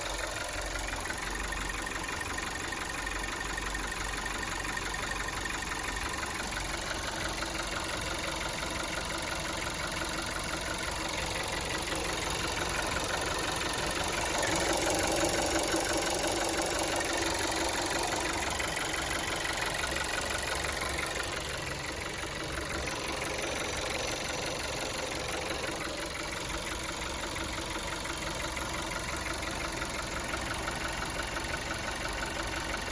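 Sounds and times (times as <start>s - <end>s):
car engine idling with knock: 0.0s - 32.9s.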